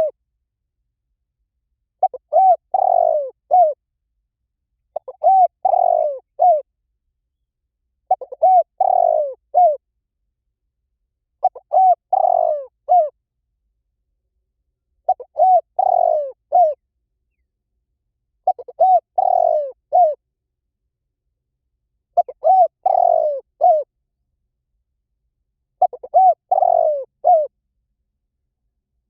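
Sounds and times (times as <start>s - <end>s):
dove cooing: 2.0s - 3.8s, 4.9s - 6.7s, 8.1s - 9.8s, 11.4s - 13.2s, 15.0s - 16.8s, 18.4s - 20.2s, 22.2s - 23.9s, 25.8s - 27.5s.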